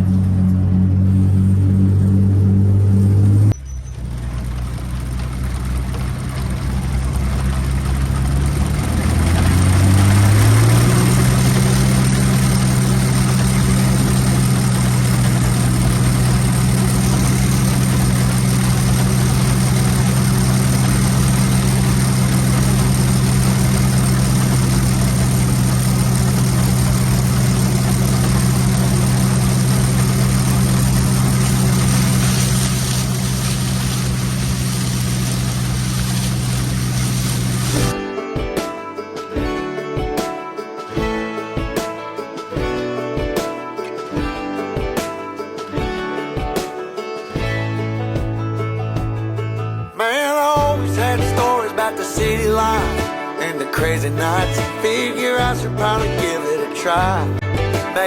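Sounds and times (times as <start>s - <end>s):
combine engine running: 0.0s - 38.0s, 50.6s - 58.0s.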